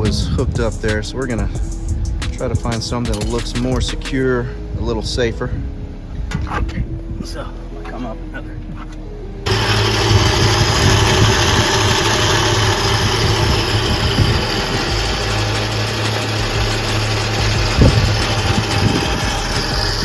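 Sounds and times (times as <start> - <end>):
electric winch whirring: 9.4 - 20.0.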